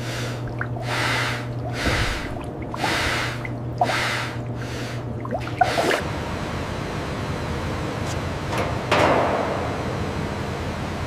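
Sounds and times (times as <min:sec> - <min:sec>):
heavy rhythmic breathing: 0:00.0 - 0:06.0
steady low hum: 0:00.0 - 0:08.6.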